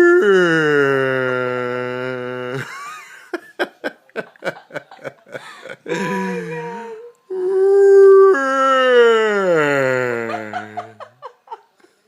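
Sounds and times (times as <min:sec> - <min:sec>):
wavering whimpering note: 0:05.9 - 0:10.3
long held vocal note: 0:05.9 - 0:10.5.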